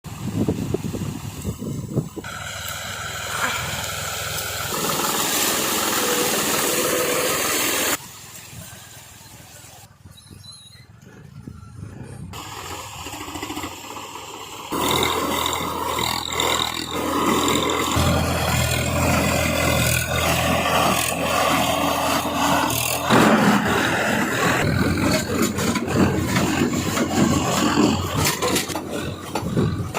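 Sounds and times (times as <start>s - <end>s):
tractor engine hum: 0.1s - 29.9s
baler mechanical clatter: 11.7s - 29.9s.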